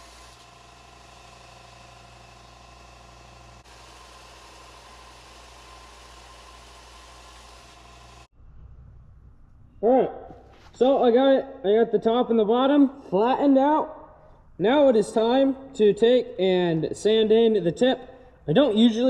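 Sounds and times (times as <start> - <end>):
electric power sander running: 0.0 - 8.3.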